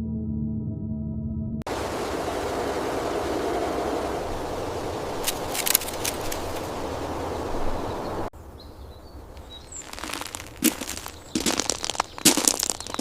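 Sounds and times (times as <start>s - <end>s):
crunching and crackling: 5.2s - 6.7s, 9.4s - 13.0s.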